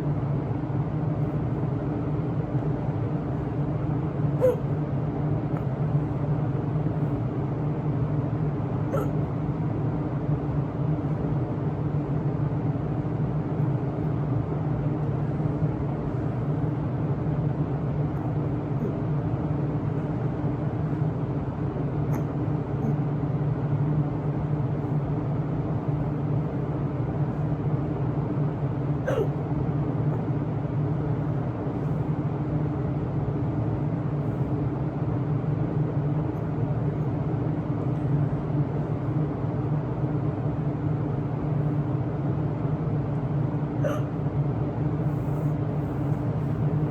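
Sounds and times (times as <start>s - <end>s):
person hiccupping: 4.4s - 4.6s, 8.9s - 9.2s, 29.1s - 29.4s, 43.8s - 44.1s.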